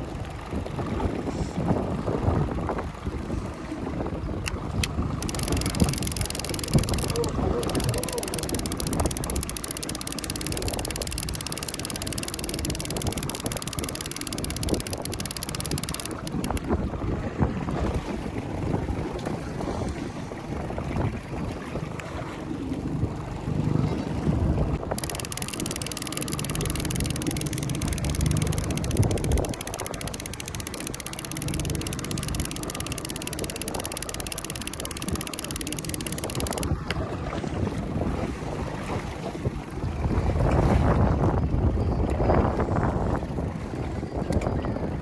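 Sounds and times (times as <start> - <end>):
boat engine running: 0.0 - 45.0
wind and water rumble: 0.0 - 45.0
wind buffeting microphone: 36.4 - 45.0.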